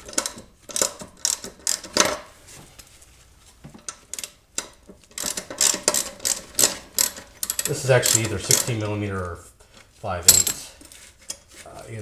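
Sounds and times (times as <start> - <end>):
wrench clinking on metal: 3.9 - 8.9, 10.2 - 10.8
sharp metal clanks: 10.3 - 10.7.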